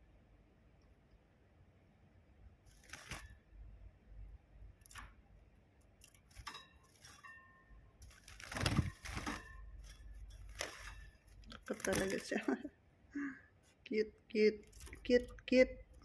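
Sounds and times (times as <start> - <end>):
small bird fluttering: 2.6 - 3.5, 8.0 - 12.7.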